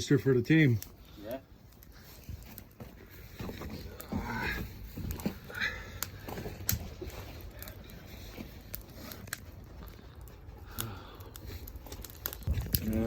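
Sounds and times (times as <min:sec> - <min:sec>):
wood fire crackling: 0:00.0 - 0:13.0
sharp fire pops: 0:02.3 - 0:09.6, 0:10.7 - 0:13.0.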